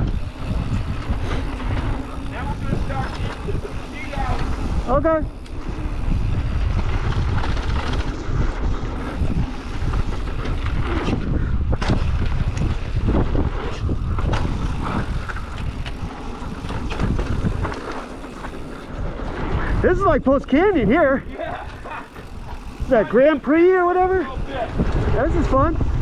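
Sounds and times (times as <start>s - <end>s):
tyres on dirt: 0.0s - 25.2s
bike clicks and rattles: 0.0s - 26.0s
wind buffeting microphone: 0.0s - 26.0s.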